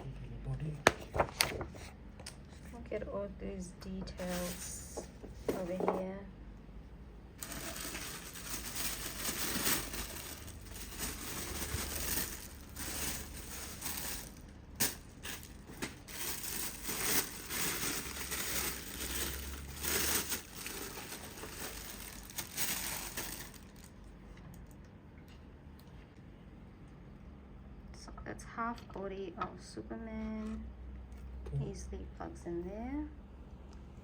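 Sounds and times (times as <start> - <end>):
plastic packaging crinkling: 7.4 - 24.0.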